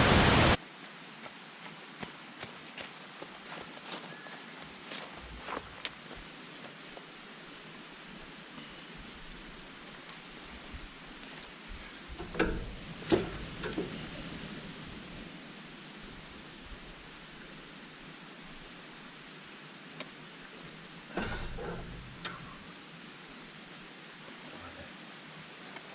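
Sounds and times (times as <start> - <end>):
water rushing: 0.0 - 0.6
high insect drone: 0.0 - 25.9
soft thumps: 21.1 - 22.6.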